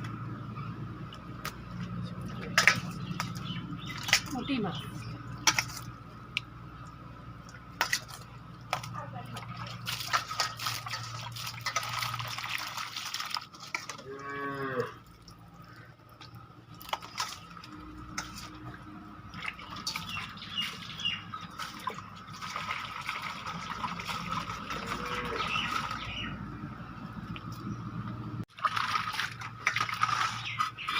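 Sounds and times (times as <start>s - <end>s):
water splashing and dripping: 1.0s - 26.5s, 27.2s - 30.9s
cow mooing: 14.0s - 15.1s, 24.7s - 25.6s.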